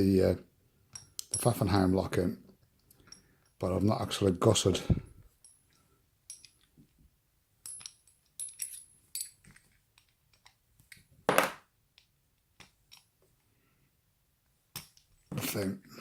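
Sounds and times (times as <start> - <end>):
small metallic clicks and clinks: 0.9 - 1.6, 2.6 - 3.6, 5.3 - 7.0, 7.6 - 11.1, 11.9 - 13.3, 14.7 - 15.4.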